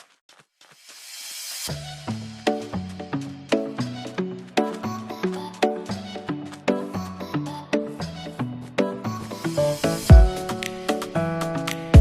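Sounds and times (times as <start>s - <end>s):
upbeat tune with bass and percussion: 9.6s - 12.0s.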